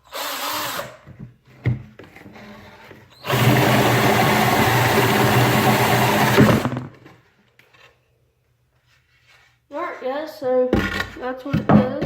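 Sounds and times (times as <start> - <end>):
cordless drill boring into wood: 0.0 - 1.0, 3.2 - 6.8.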